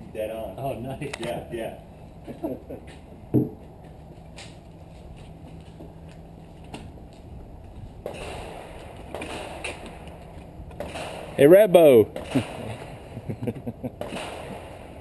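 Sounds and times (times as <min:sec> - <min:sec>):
low background noise: 0:00.0 - 0:15.0
sharp gunshot: 0:08.0 - 0:10.0, 0:10.8 - 0:13.2, 0:14.0 - 0:15.0
distant gunshots: 0:08.0 - 0:13.2, 0:14.0 - 0:15.0.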